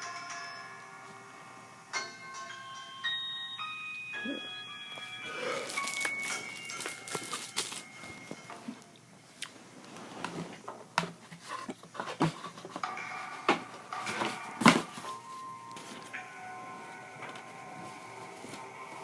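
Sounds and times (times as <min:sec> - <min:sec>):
faint background music: 0:00.0 - 0:19.0
packaging being handled: 0:05.3 - 0:08.5.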